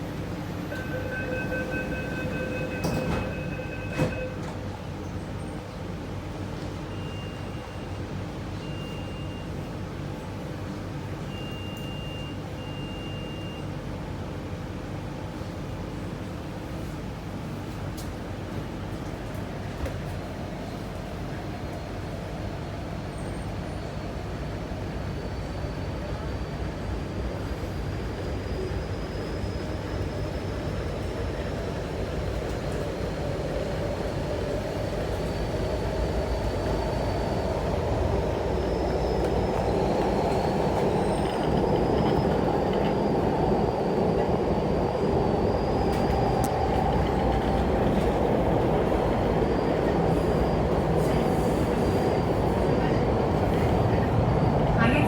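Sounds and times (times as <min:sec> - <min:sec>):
train rail rumble: 0:13.9 - 0:55.0.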